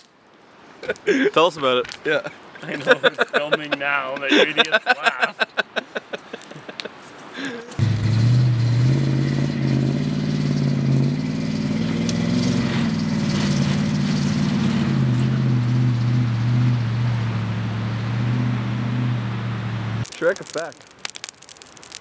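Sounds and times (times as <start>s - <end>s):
vehicle engine running: 7.8s - 20.0s.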